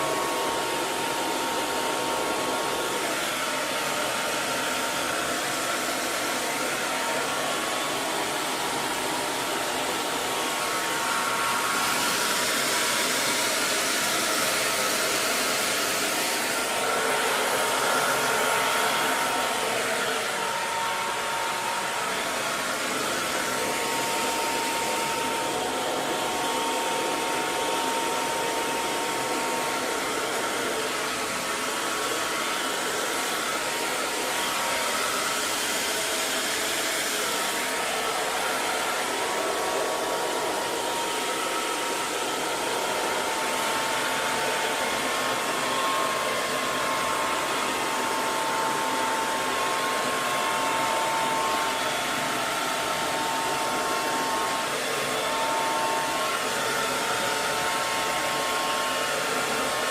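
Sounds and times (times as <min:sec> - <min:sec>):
hair dryer blowing: 0:00.0 - 0:59.9.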